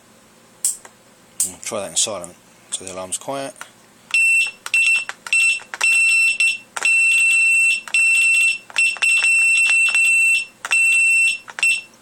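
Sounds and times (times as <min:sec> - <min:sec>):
electronic alarm beeping: 0:04.1 - 0:12.0.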